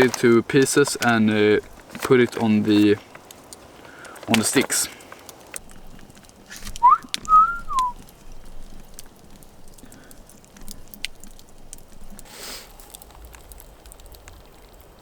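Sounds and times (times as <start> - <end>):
whistled tone sweeping: 6.8 - 8.0.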